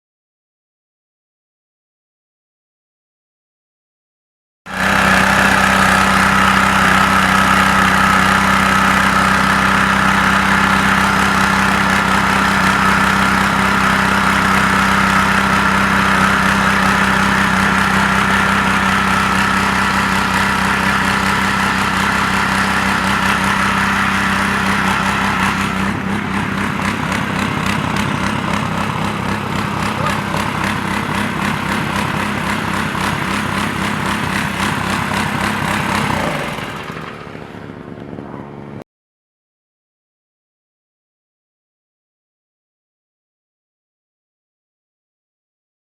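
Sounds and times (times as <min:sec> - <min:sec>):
small petrol engine running: 0:04.7 - 0:38.8.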